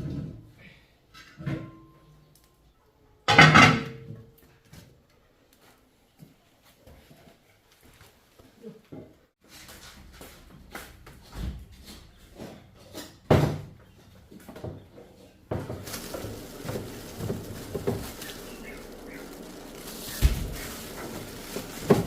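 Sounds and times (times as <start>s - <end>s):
steady background noise: 15.4s - 22.0s
knocks and clatter: 15.5s - 22.0s.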